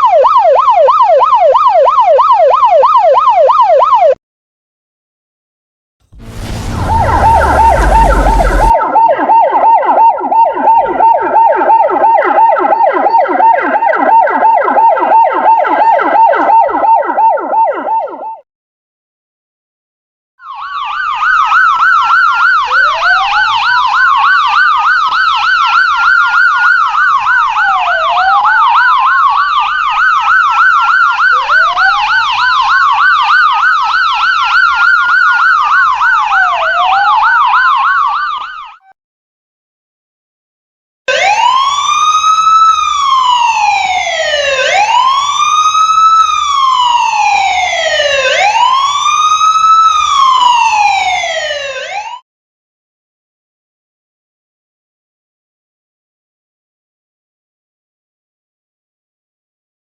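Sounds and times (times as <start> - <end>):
siren wailing: 6.2 - 18.4, 20.6 - 38.8, 41.1 - 52.2
police siren warbling yelp: 6.4 - 18.4, 20.4 - 38.9, 41.1 - 52.2.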